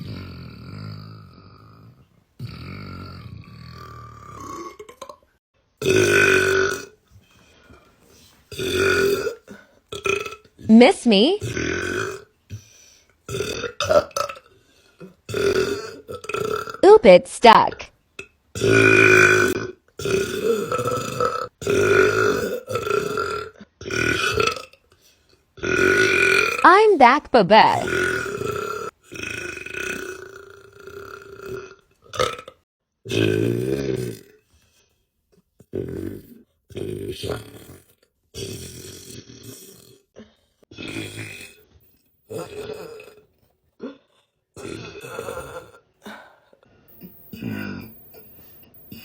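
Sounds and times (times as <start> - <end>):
woman belching: 5.8 - 6.9, 8.6 - 9.4, 13.3 - 14.4, 15.3 - 17.8, 18.6 - 24.7, 25.6 - 28.9, 31.0 - 34.2, 42.3 - 44.0, 44.6 - 45.8, 47.0 - 49.0
woman burping: 13.3 - 14.4, 15.0 - 17.9, 18.6 - 24.7, 25.7 - 28.9, 42.3 - 44.0, 44.6 - 46.4, 47.0 - 49.0.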